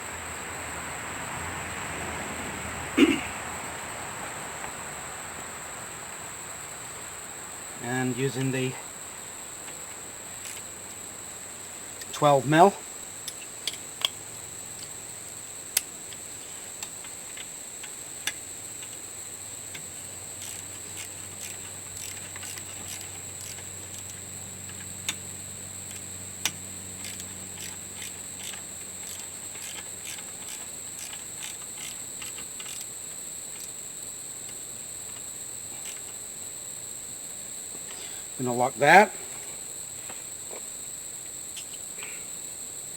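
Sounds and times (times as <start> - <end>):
insects chirring: 0.0 - 42.9
ratchet wrench clicking: 10.4 - 10.7, 19.7 - 25.2, 25.9 - 33.0.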